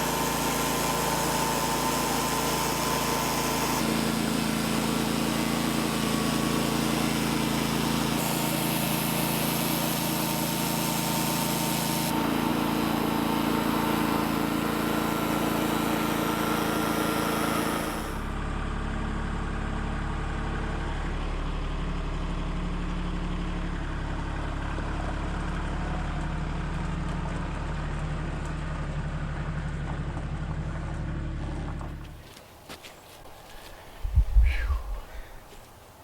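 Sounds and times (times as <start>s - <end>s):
engine idling: 0.0s - 36.0s
high-pitched motor: 16.0s - 18.3s.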